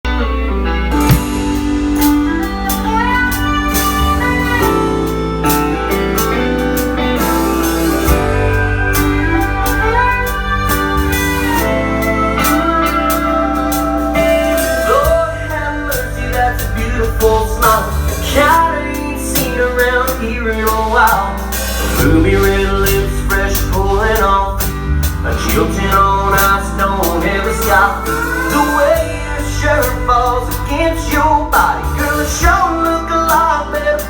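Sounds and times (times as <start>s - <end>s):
country band playing: 0.0s - 34.0s
steel guitar gliding lines: 0.1s - 17.0s.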